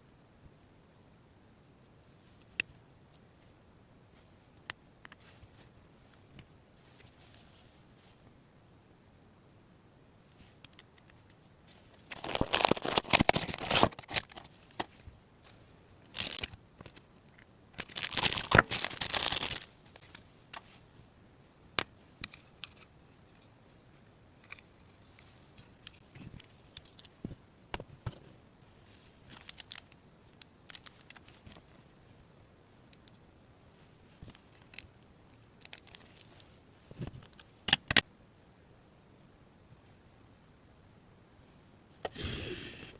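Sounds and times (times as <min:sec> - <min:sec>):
material crinkling and tearing: 0:11.9 - 0:15.0, 0:16.1 - 0:17.1, 0:17.7 - 0:20.7, 0:28.9 - 0:31.8, 0:34.2 - 0:34.9, 0:35.6 - 0:37.6.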